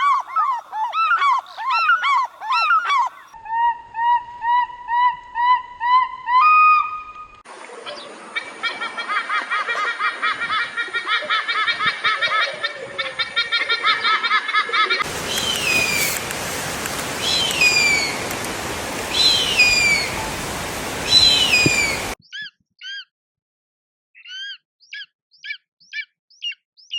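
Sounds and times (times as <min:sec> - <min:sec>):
eagle descending screams: 0:00.0 - 0:03.8
eagle piping calls: 0:00.0 - 0:07.3, 0:15.0 - 0:23.0.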